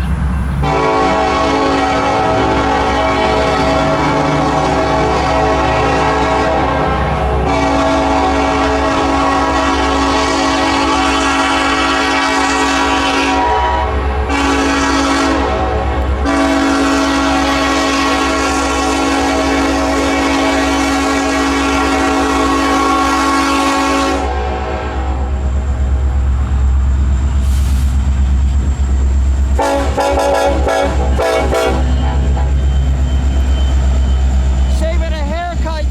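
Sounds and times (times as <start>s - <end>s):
locomotive air horn blasts: 0.6s - 25.4s, 29.6s - 32.7s
diesel engine rumble: 24.4s - 35.9s.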